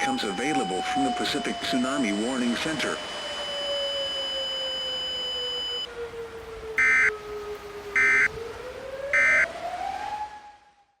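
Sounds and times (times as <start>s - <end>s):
electronic data burst squawks: 0.0s - 5.9s
high steady tone: 0.0s - 5.9s, 9.2s - 9.4s.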